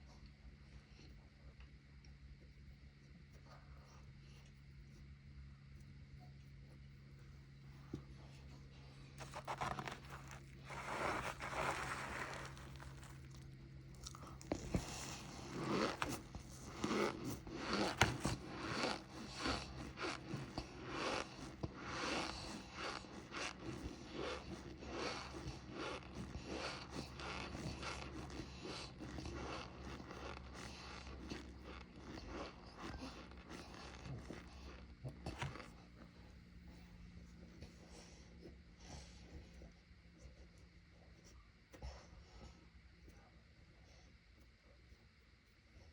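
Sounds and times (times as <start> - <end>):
cornstarch crunching when chewed: 7.8 - 36.5.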